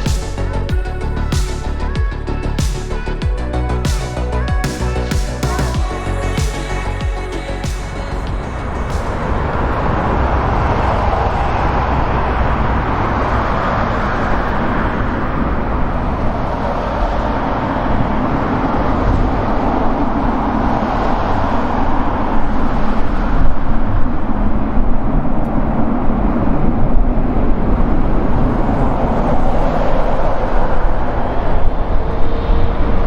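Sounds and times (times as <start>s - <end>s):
jet engines roaring: 7.9s - 33.0s.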